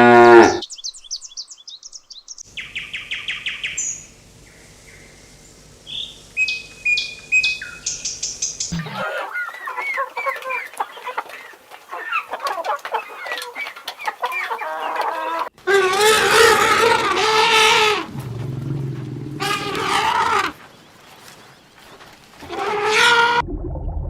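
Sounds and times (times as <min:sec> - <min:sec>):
chickens clucking: 0:08.7 - 0:23.0.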